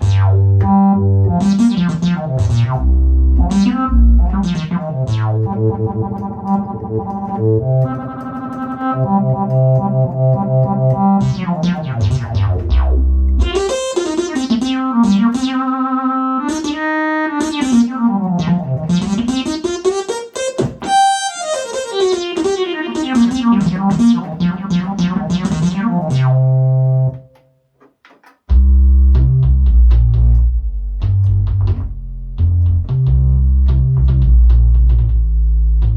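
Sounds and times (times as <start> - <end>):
low bass notes: 0.0 - 19.9, 20.6 - 27.2, 28.5 - 35.9
keyboard lead line with pitch bends: 0.0 - 27.4
keyboard chords: 0.0 - 35.9.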